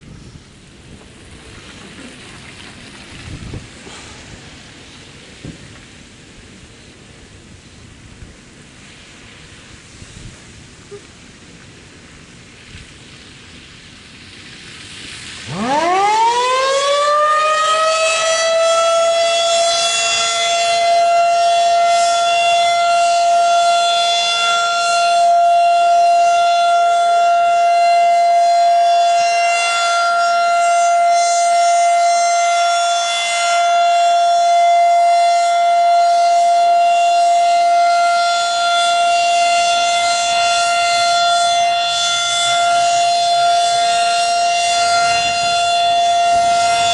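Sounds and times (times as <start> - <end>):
warning siren winding up: 15.5 - 46.9.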